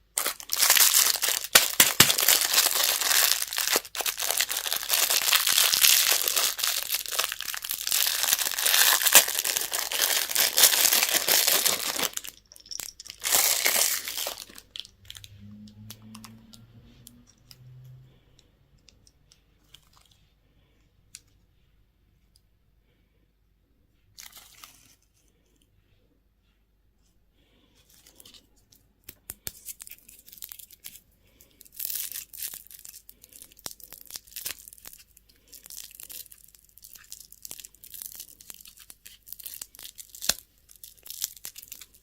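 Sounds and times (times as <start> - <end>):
wrapper crinkling and tearing: 0.1 - 15.3, 31.6 - 42.0.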